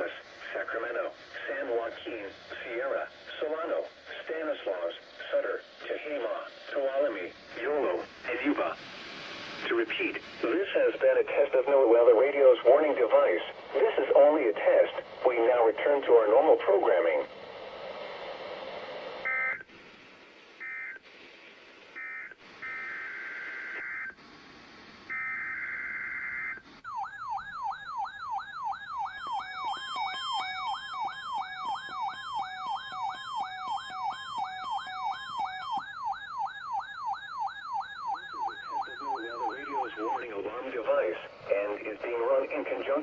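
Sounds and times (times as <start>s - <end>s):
warbling siren alarm: 19.2s - 19.6s, 22.0s - 24.2s, 25.1s - 40.6s
high electronic beeping: 37.6s - 40.3s
digital data bursts: 38.1s - 43.0s.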